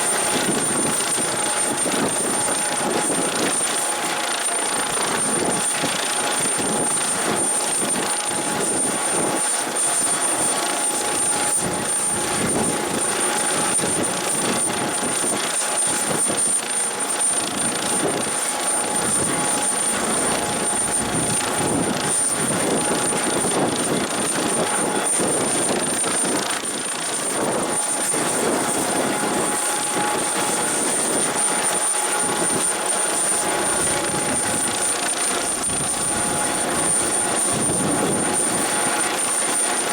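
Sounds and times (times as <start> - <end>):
helicopter rotor: 0.0 - 39.9
high-pitched turbine whine: 0.0 - 39.9.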